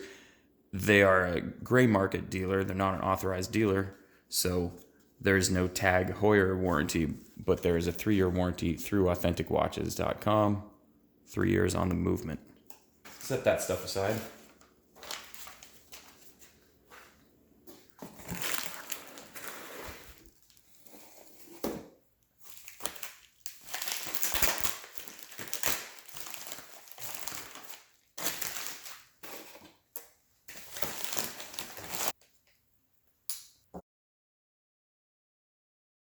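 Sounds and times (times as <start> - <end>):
packing material crinkling: 13.1 - 21.5, 22.3 - 32.5.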